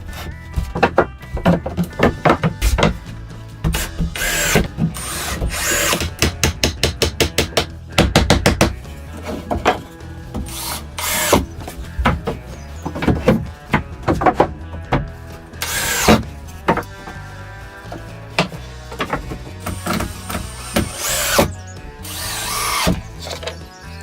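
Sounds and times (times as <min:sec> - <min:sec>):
background music: 0:00.0 - 0:24.0
tool knocking and clicking on wood: 0:00.6 - 0:10.6
tool rasping wood: 0:01.6 - 0:07.7, 0:08.6 - 0:23.4.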